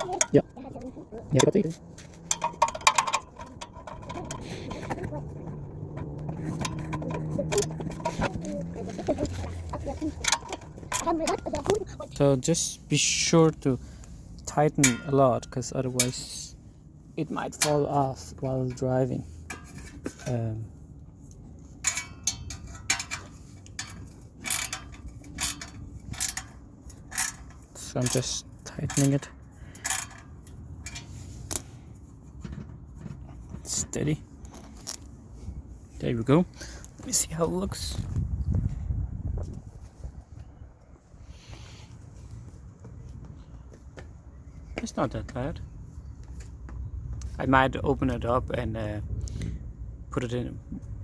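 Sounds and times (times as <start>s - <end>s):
metal tool clinking on clamp: 2.2s - 4.4s, 14.8s - 16.2s, 21.8s - 31.1s
hand wrench clicking: 21.8s - 26.5s.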